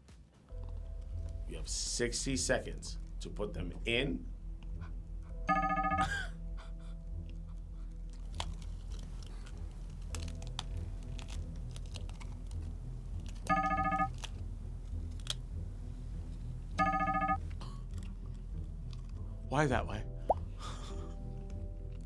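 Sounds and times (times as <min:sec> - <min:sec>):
background music with low beat: 0:00.5 - 0:07.7
electronic ringtone melody: 0:05.5 - 0:06.1, 0:13.5 - 0:14.2, 0:16.8 - 0:17.4.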